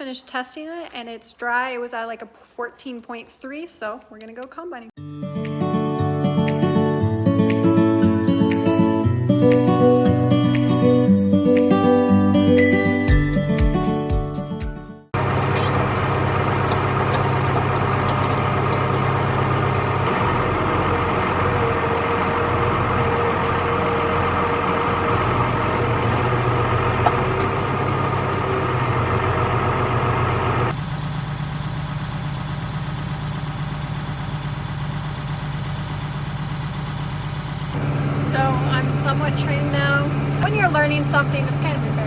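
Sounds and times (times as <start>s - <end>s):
background music: 5.0s - 15.1s
farm machine engine running: 15.2s - 42.0s
low engine drone: 15.2s - 42.0s.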